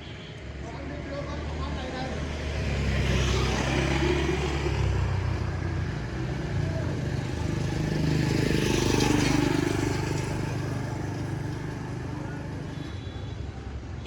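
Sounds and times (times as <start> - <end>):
vehicle passing close: 6.7 - 12.2.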